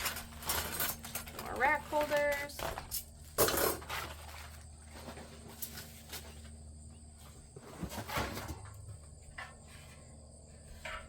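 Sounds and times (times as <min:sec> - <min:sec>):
rustling of packing: 0:00.0 - 0:08.9
clunk: 0:10.7 - 0:11.0.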